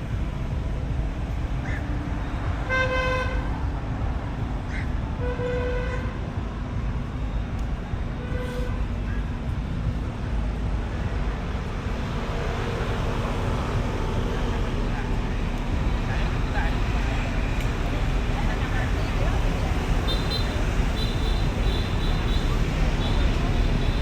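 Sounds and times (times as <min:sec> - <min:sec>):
street traffic rumble: 0:00.0 - 0:24.0
vehicle horn honks: 0:20.0 - 0:24.0.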